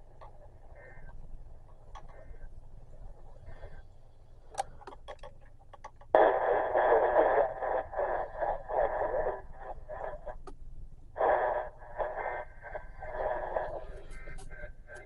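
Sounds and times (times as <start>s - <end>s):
radio static hiss: 0.0s - 5.2s, 6.0s - 15.0s
faint clicks: 0.1s - 2.5s.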